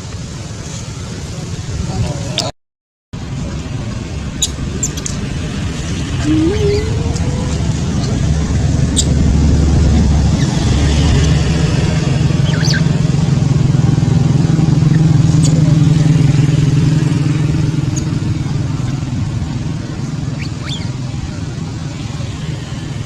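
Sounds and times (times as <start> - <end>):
vehicle engine passing: 3.2 - 23.0
short high squeaks: 6.2 - 7.2.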